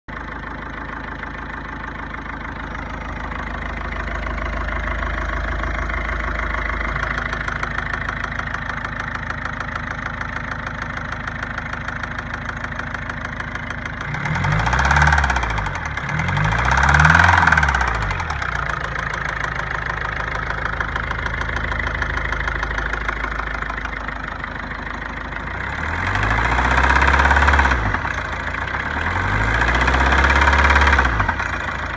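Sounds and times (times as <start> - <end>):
diesel engine idling with knock: 0.1 - 31.9
engine revving: 13.9 - 23.7, 25.3 - 31.9.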